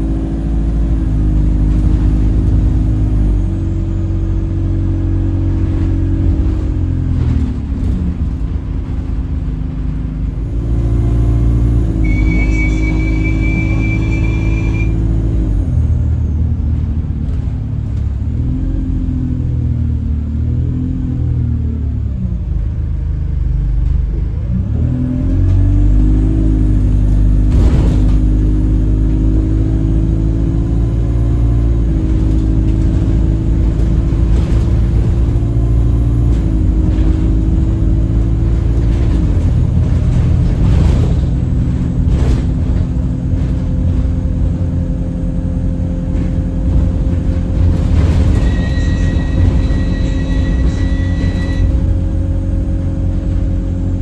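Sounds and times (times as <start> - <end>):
bus engine rumble: 0.0 - 54.0
horn-like drivetrain drone: 10.4 - 15.8, 47.6 - 52.6
high thin whistle: 11.9 - 15.1
sharp knocks and rattles: 27.1 - 54.0.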